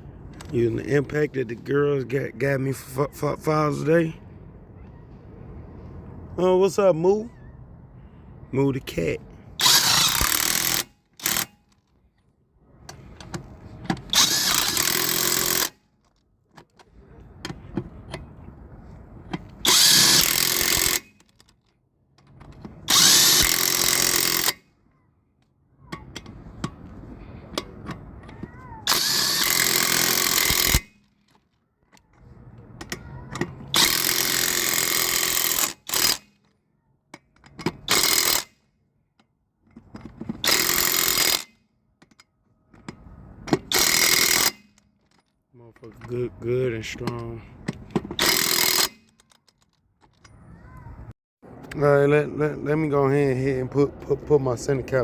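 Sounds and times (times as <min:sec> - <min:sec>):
impact wrench hammering: 0:09.6 - 0:11.6, 0:13.2 - 0:15.8, 0:19.3 - 0:21.4, 0:22.6 - 0:24.6, 0:27.6 - 0:31.3, 0:32.8 - 0:36.5, 0:37.1 - 0:38.6, 0:39.8 - 0:42.2, 0:42.8 - 0:44.8, 0:47.0 - 0:49.4.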